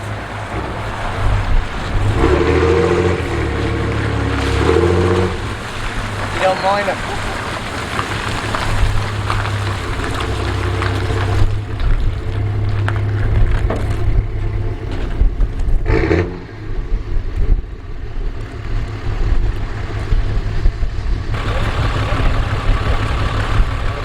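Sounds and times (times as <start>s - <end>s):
vehicle engine idling: 0.0s - 24.0s
knocks and clatter: 0.4s - 16.3s.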